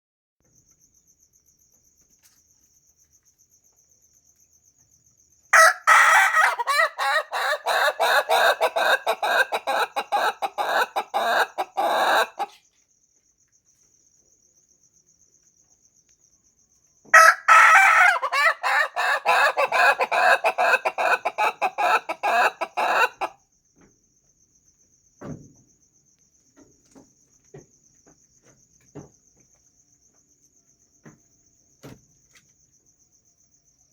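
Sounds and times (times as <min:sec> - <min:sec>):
rooster crowing: 0:05.6 - 0:12.5, 0:17.1 - 0:23.4.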